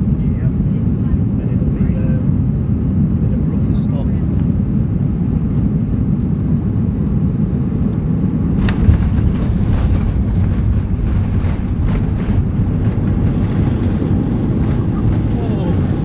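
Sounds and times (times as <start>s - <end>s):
aircraft cabin rumble: 0.0s - 16.0s
rattling and clatter: 8.6s - 16.0s.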